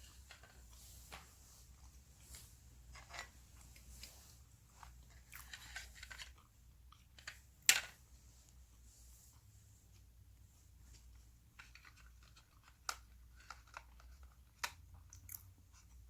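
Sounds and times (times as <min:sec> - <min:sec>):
wet chewing sounds: 0:14.6 - 0:16.0.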